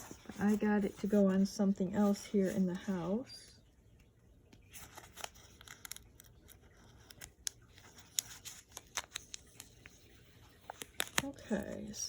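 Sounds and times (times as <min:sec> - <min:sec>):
plastic packet crackling: 0:05.0 - 0:09.9, 0:10.7 - 0:11.9.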